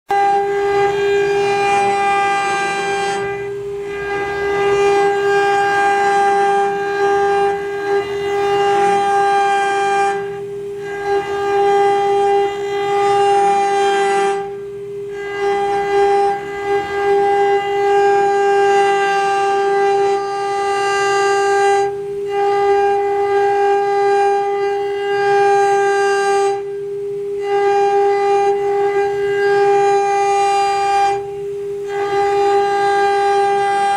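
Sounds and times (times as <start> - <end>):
ringing metal cutting sound: 0.1 - 21.3
spindle high whine: 0.1 - 33.9.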